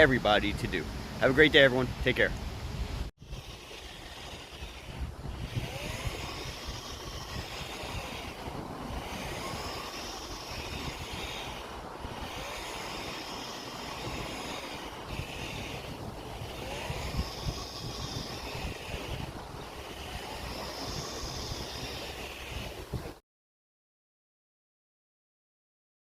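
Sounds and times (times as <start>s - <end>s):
wind rumbling on microphone: 0.0s - 23.2s
flywheel trainer whirring: 3.2s - 23.0s.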